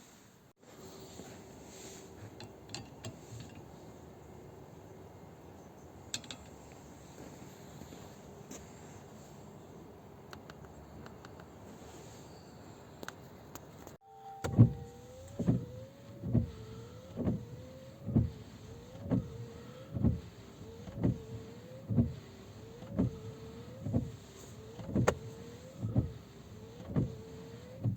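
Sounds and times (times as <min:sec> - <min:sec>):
wiper motor whine: 0:14.0 - 0:27.9.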